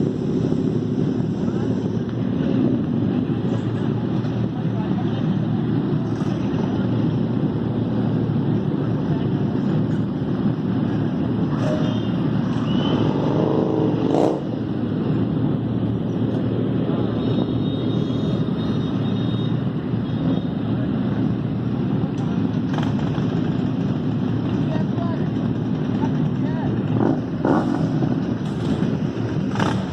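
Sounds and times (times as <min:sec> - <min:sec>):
wind and road noise: 0:00.0 - 0:29.9.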